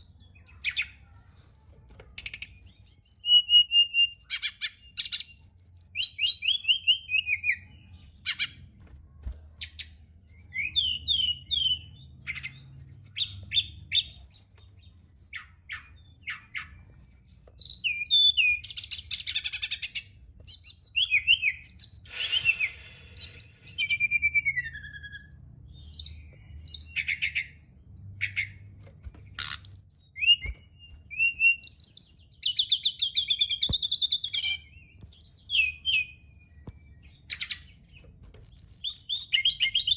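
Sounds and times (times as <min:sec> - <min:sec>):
bird singing whistled trills: 0:09.6 - 0:28.6, 0:29.6 - 0:37.8, 0:38.4 - 0:39.9.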